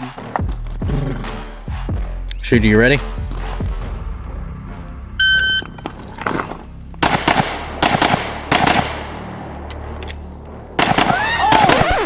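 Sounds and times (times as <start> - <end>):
pistol shots: 7.0 - 9.4, 10.8 - 12.0.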